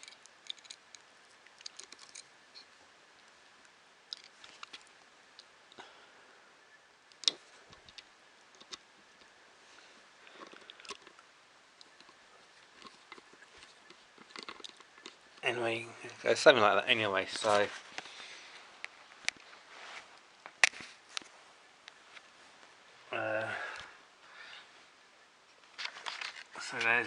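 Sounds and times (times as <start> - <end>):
small plastic parts clicking: 0.0 - 2.3, 4.1 - 5.5, 11.8 - 15.2
faint steady hiss: 0.0 - 27.0.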